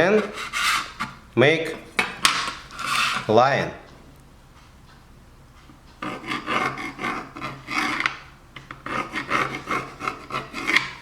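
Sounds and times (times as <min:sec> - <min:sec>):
marking tool scraping plastic: 0:00.0 - 0:01.2, 0:02.6 - 0:03.3, 0:06.0 - 0:11.0.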